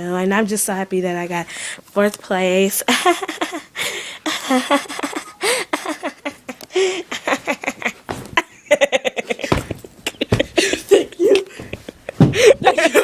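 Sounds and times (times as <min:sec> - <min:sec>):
people laughing and giggling: 0:02.9 - 0:13.0.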